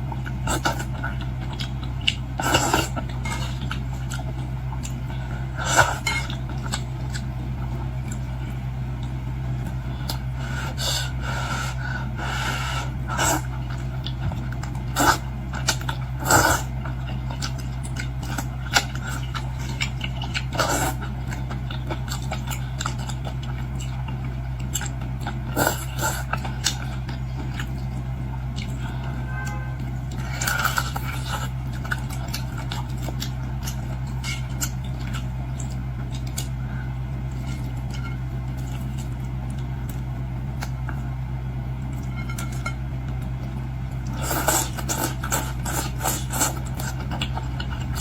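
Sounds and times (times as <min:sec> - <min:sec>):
steady low hum: 0:00.0 - 0:48.0
utensils clinking against a bowl: 0:42.0 - 0:42.9.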